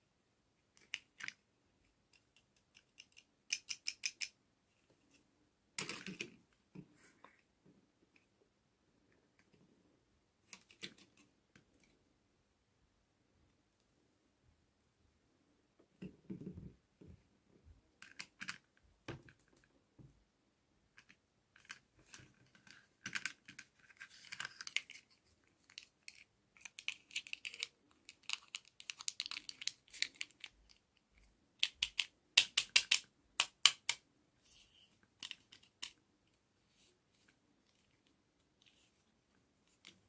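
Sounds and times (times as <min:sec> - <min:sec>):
plastic items clicking: 0:21.0 - 0:30.8.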